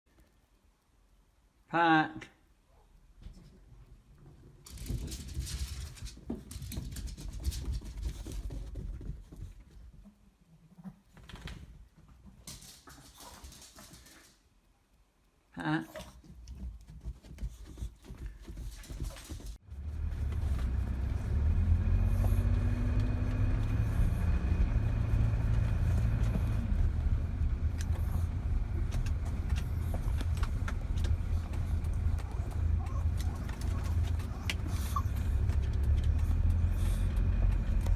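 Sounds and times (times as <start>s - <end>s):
dogs scrabbling and pattering: 3.2s - 14.4s, 16.0s - 37.9s
car engine rumble: 19.6s - 37.9s
road noise: 19.6s - 37.9s
dogs crying: 32.0s - 35.6s.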